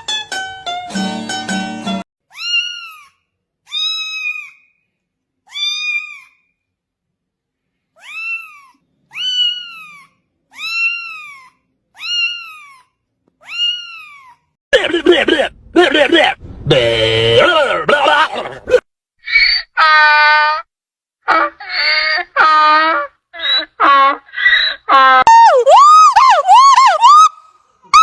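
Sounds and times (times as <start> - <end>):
cat meowing: 2.3 - 4.6, 5.5 - 6.4, 8.0 - 14.5.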